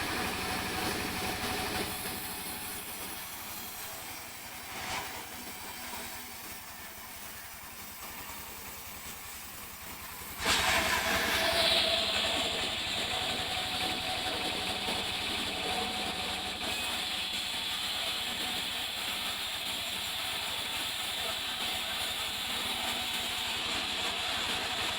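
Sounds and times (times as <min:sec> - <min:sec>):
saw blade cutting log: 0:00.0 - 0:24.9
sawmill saw droning: 0:00.0 - 0:24.9.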